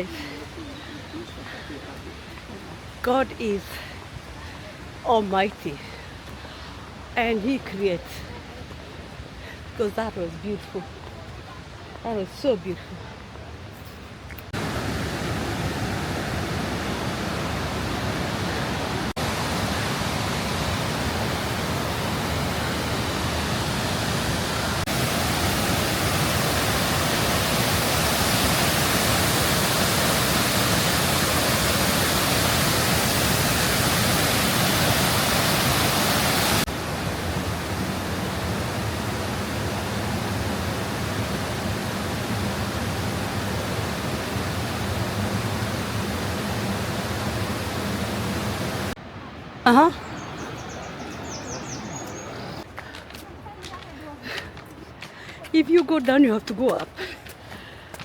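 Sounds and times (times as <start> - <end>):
waterfall rushing: 14.5 - 51.2.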